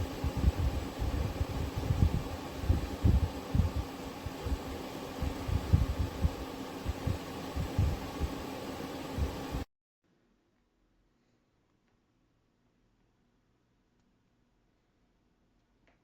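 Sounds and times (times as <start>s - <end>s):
steady low hum: 0.0s - 9.7s.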